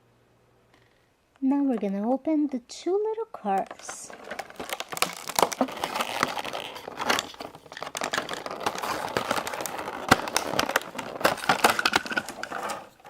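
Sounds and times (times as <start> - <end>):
plastic packaging crinkling: 3.5 - 13.0.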